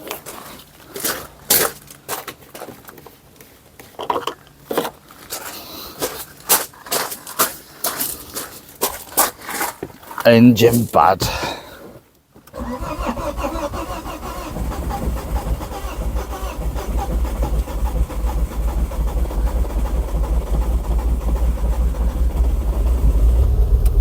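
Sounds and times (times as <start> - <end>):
car engine cranking on starter: 12.5 - 24.0.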